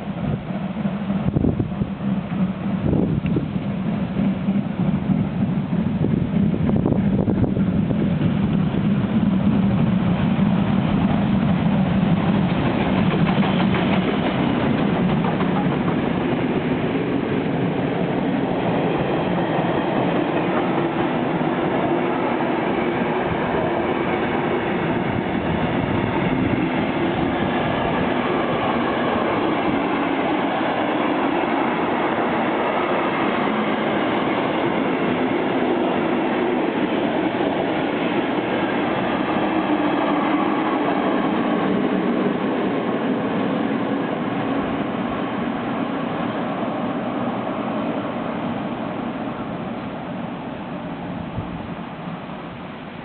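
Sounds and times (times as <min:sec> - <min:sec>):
train wheels clattering over rails: 0:00.0 - 0:44.9.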